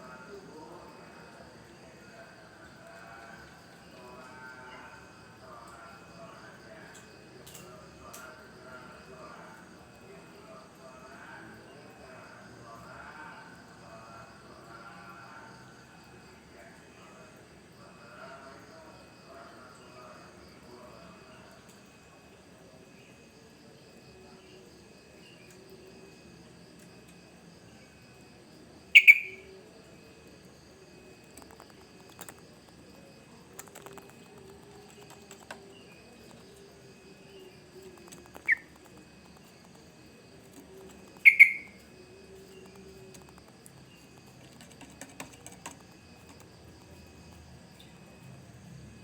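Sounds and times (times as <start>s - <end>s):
faint insect buzz: 0.0s - 49.0s
bird calls: 28.9s - 29.5s, 38.0s - 39.0s, 41.0s - 41.8s.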